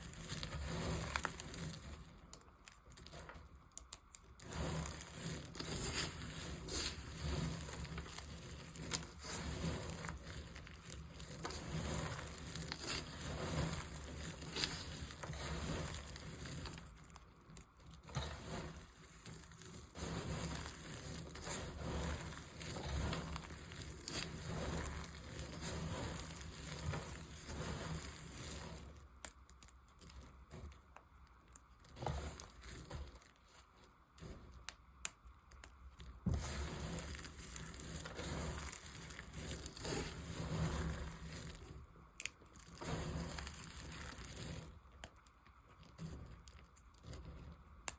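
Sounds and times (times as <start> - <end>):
blade carving dry soap: 0.0 - 47.9.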